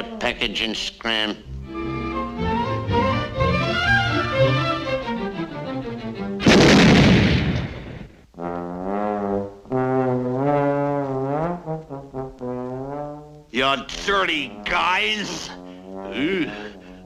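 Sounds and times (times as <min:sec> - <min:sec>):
cartoon orchestral music: 0:01.4 - 0:06.4, 0:13.6 - 0:17.0
loud crash: 0:06.4 - 0:08.2
trombones holding wobbling notes: 0:08.4 - 0:17.0.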